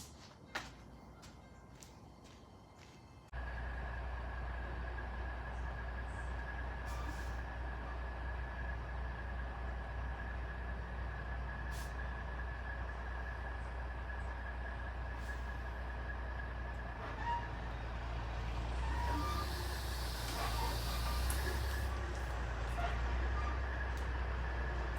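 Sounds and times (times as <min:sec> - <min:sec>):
truck engine idling: 0:03.3 - 0:24.9
hiss: 0:19.0 - 0:21.9
thin steady whine: 0:19.0 - 0:21.9.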